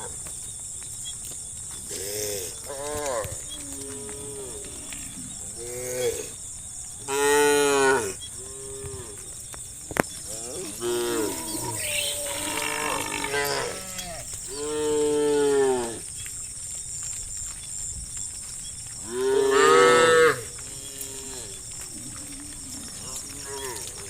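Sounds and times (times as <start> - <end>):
cows mooing: 10.7 - 15.9
steady high hiss: 11.2 - 15.0.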